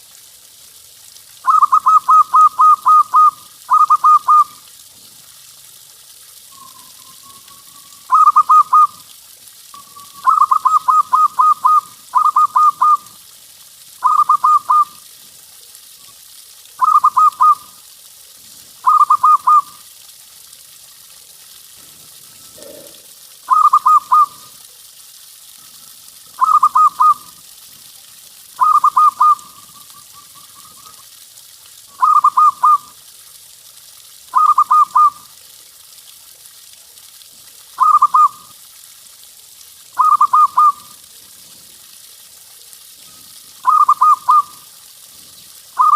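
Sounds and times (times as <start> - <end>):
faint steady hiss: 0.0 - 45.9
dove cooing: 1.5 - 4.6, 6.6 - 9.0, 9.8 - 13.1, 14.0 - 15.0, 16.8 - 17.6, 18.8 - 19.7, 22.3 - 24.5, 26.4 - 27.3, 28.6 - 30.8, 32.0 - 32.8, 34.4 - 35.2, 40.0 - 40.9, 43.6 - 44.6.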